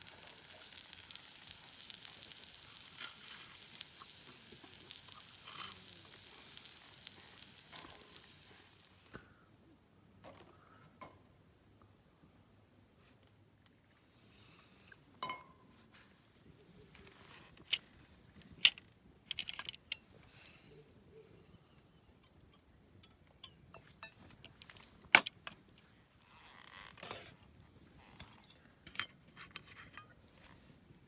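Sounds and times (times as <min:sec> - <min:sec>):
clicks of small hard objects: 0:00.0 - 0:09.0, 0:17.4 - 0:20.0
soft rustles: 0:15.8 - 0:18.6.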